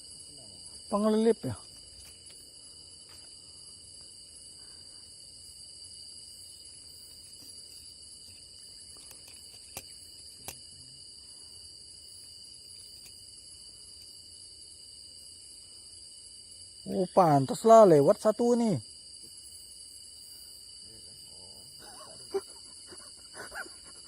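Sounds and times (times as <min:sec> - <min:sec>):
crickets and insects chirping: 0:00.0 - 0:24.0.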